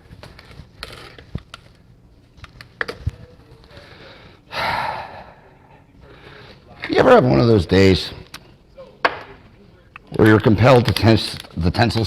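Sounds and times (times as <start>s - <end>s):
person sighing: 4.5s - 5.6s.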